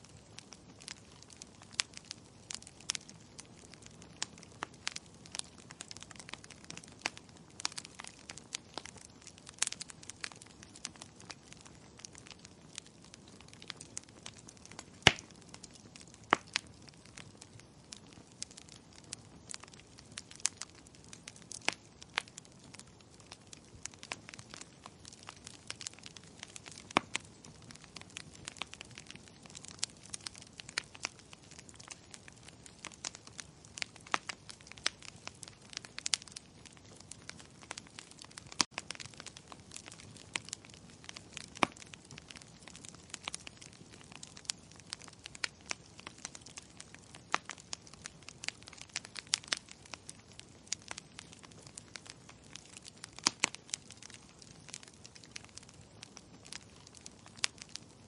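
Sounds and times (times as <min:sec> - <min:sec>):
wood fire crackling: 0:00.0 - 0:58.0.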